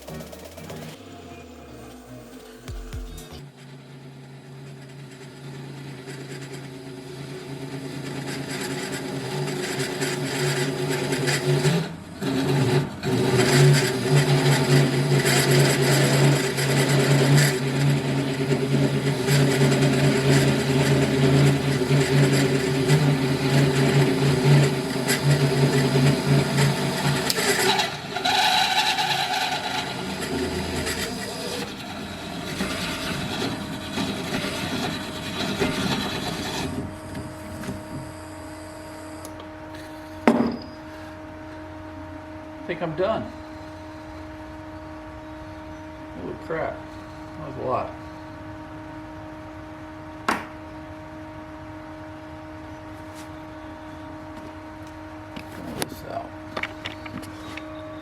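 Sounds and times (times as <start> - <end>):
drill press motor hum: 0.0 - 58.0
cutter grinding through steel: 4.8 - 38.2.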